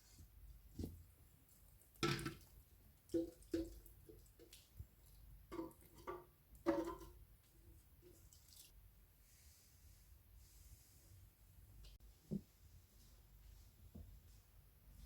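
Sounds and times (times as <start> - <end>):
water dripping and splashing: 1.2 - 8.8.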